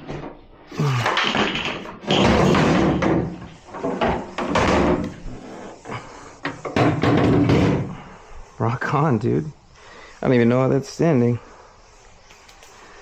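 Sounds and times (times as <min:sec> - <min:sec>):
metal clanking and scraping: 0:01.3 - 0:05.8.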